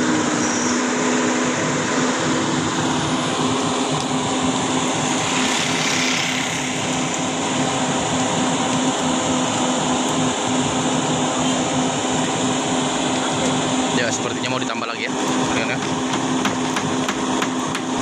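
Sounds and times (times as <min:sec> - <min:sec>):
heavy engine running: 0:00.0 - 0:18.0
water spraying from hose: 0:02.5 - 0:10.6.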